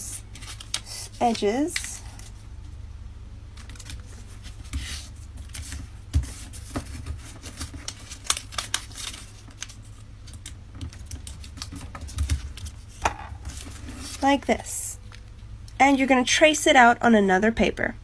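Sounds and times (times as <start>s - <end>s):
steady low hum: 0.0s - 18.0s
paper folding and crinkling: 0.2s - 2.7s, 3.5s - 15.3s.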